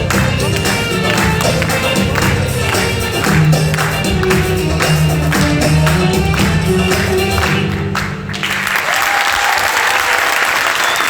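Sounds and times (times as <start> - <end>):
live ensemble music with percussion: 0.0 - 10.8
audience applause: 0.0 - 11.0.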